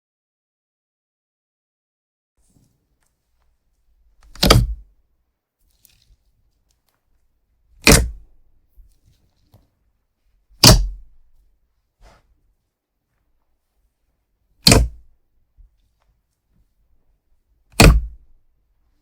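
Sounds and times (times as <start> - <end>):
slime squishing by hand: 4.2 - 4.9, 7.8 - 9.8, 10.5 - 11.4, 14.6 - 15.2, 17.7 - 18.3.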